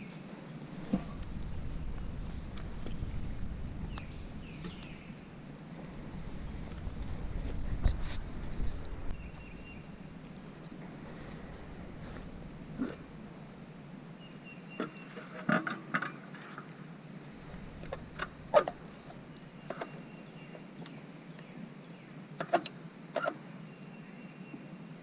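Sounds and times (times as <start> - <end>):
steady low hiss: 0.0 - 25.0.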